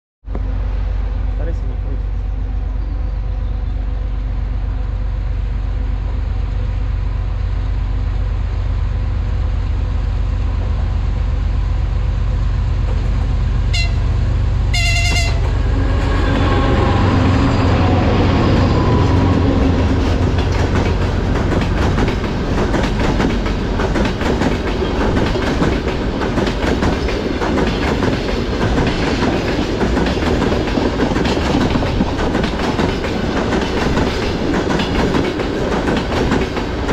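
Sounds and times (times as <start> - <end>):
diesel locomotive rumble: 0.2 - 36.9
clickety-clack of train wheels: 12.8 - 14.1, 14.7 - 17.0, 18.0 - 36.9
locomotive horn blasts: 13.7 - 17.7.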